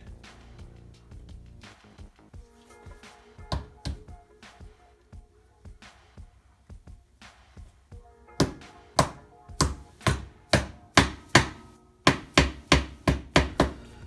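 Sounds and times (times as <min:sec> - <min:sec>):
plastic mallet tapping: 0:03.4 - 0:04.2, 0:08.4 - 0:13.8.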